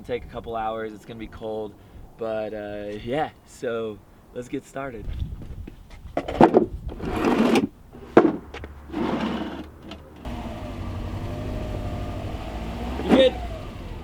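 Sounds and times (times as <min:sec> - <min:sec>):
car engine running: 0:10.2 - 0:14.0.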